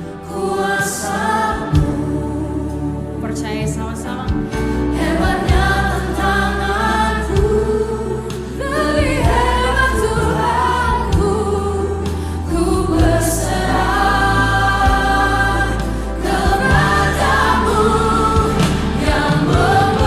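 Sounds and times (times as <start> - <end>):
choir singing gospel song: 0.0 - 20.0
steady bass line: 1.3 - 20.0
band accompaniment: 13.0 - 20.0.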